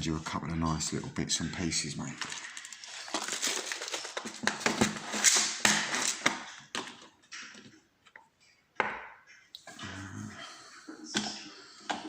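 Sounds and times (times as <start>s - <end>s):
small metal parts clattering: 2.2s - 7.1s.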